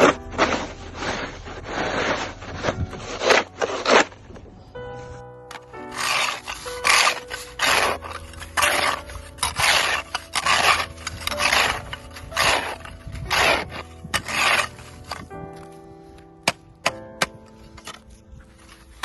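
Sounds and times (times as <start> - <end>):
snow being scraped: 0.0 - 4.2, 5.8 - 15.7.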